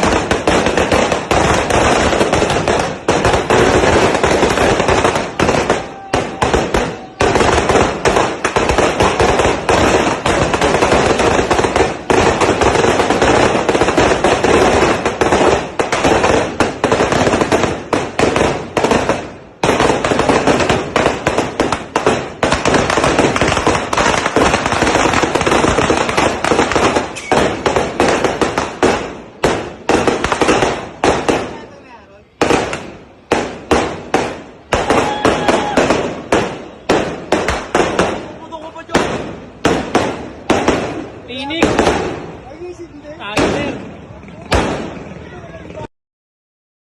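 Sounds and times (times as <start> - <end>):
firecracker string crackling: 0.0 - 45.9.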